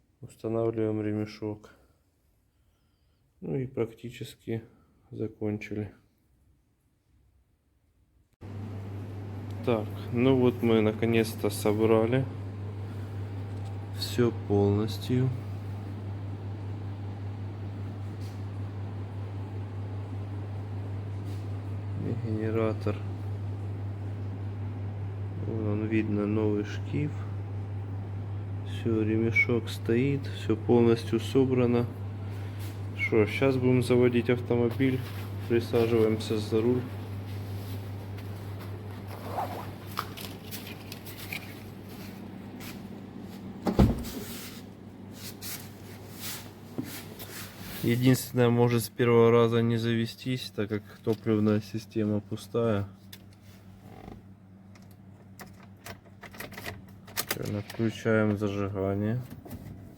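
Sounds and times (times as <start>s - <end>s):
steady low hum: 8.4s - 59.9s
clicks and rustles: 38.6s - 41.8s
car door shutting: 43.6s - 44.2s.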